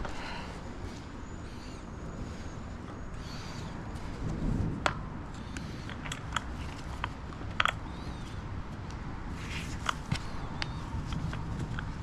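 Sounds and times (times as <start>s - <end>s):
tire levers clicking on wheel rim: 4.8s - 12.0s.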